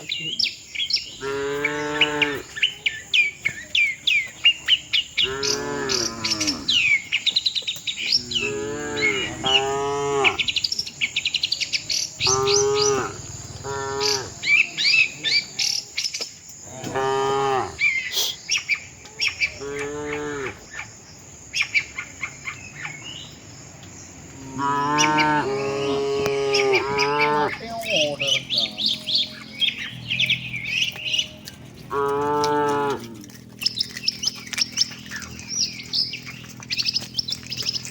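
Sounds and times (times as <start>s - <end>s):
birds chirping and trilling: 0.0s - 37.9s
cattle mooing: 1.2s - 2.6s, 5.2s - 7.0s, 8.1s - 10.6s, 12.2s - 14.7s, 16.7s - 17.8s, 19.6s - 20.6s, 24.3s - 36.4s.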